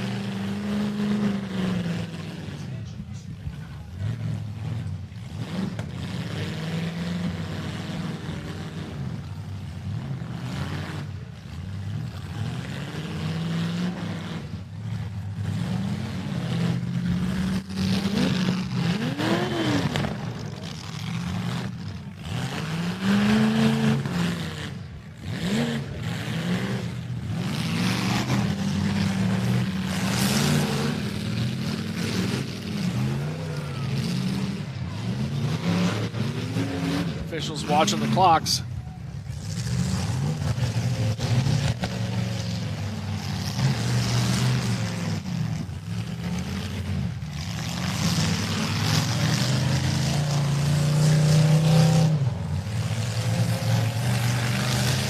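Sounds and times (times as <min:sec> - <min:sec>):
car engines revving: 0:00.0 - 0:55.0
cars ramming each other: 0:00.0 - 0:55.0.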